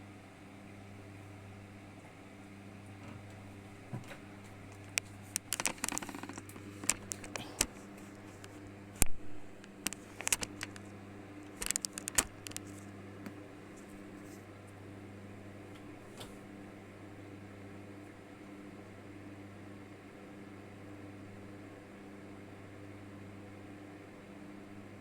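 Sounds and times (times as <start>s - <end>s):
sharp clicks and taps: 4.8s - 7.8s, 8.4s - 10.8s, 11.5s - 13.4s.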